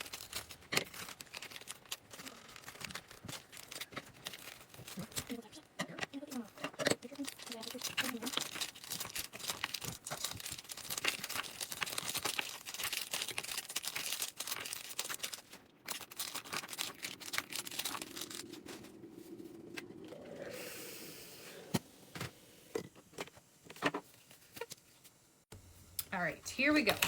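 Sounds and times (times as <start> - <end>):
plastic packaging crinkling and tearing: 0.0 - 5.6, 6.2 - 19.6
rapid clicks and crackles: 0.0 - 19.0
faint steady rising tone: 18.0 - 22.8.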